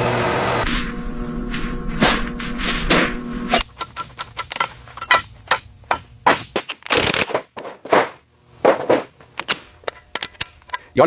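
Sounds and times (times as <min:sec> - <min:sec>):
sharp clicks and knocks: 0:03.6 - 0:08.1.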